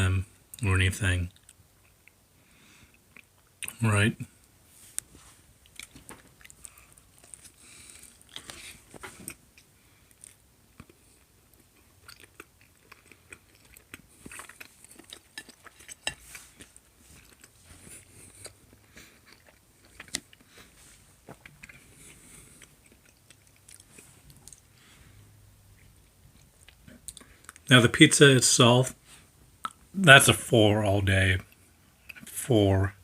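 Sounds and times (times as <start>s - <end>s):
person chewing pizza: 5.0s - 27.7s.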